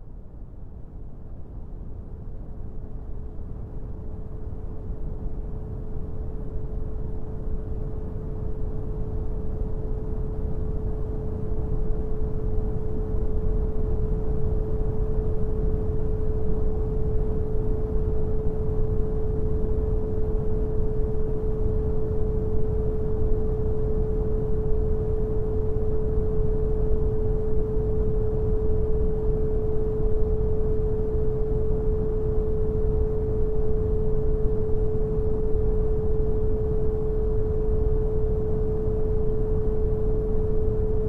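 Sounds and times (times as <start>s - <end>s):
steady pure tone: 9.1s - 41.0s.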